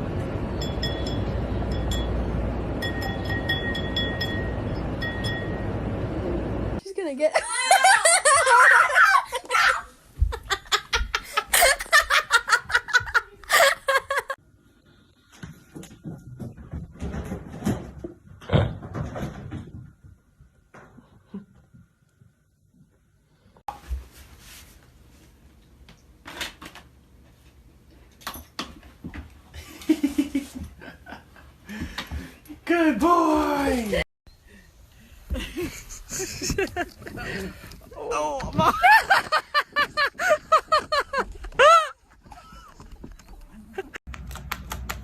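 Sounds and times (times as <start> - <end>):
person laughing hard: 7.4 - 14.4, 35.3 - 42.9.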